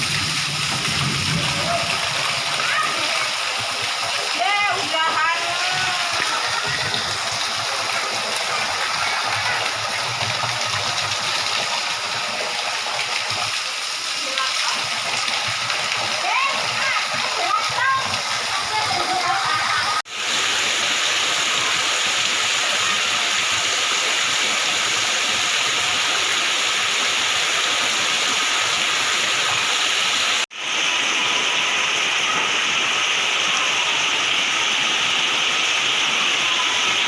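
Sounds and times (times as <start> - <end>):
heavy rain pouring: 0.0 - 37.0.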